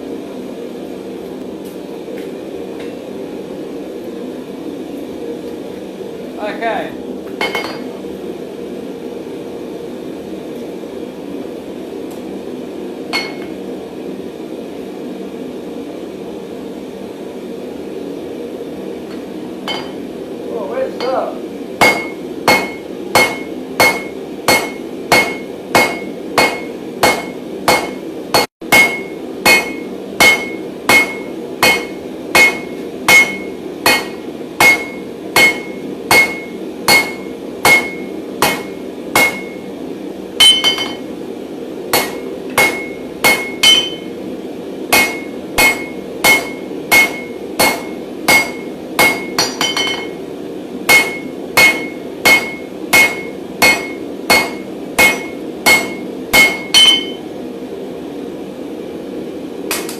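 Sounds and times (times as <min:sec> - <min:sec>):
hammer striking steel on anvil: 0:07.4 - 0:07.9, 0:13.1 - 0:13.6, 0:19.1 - 0:20.0, 0:21.0 - 0:39.7, 0:40.4 - 0:41.1, 0:41.9 - 0:44.2, 0:44.9 - 0:50.2, 0:50.9 - 0:57.2, 0:59.7 - 0:59.9.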